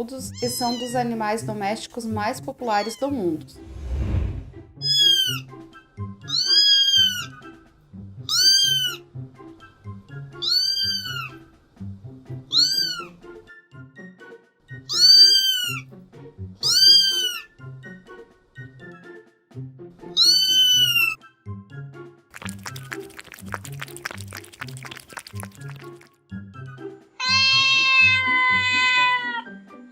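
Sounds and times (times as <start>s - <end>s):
cat meowing: 0.3s - 1.0s, 4.8s - 5.4s, 6.3s - 7.3s, 8.3s - 9.0s, 10.4s - 11.4s, 12.5s - 13.2s, 14.9s - 15.8s, 16.6s - 17.5s, 20.2s - 21.2s, 27.2s - 29.5s.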